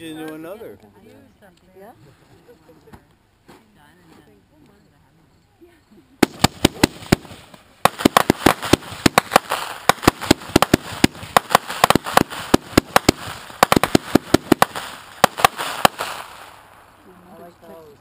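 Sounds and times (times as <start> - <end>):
firework barrage bangs: 6.2 - 16.7
firework crackling hiss: 6.2 - 17.1.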